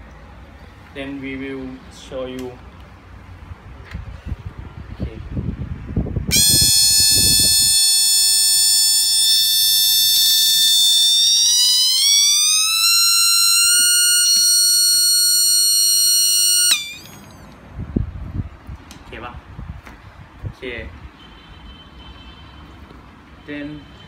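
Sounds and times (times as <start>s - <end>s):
piezo buzzer high-pitched tone: 6.3s - 17.4s.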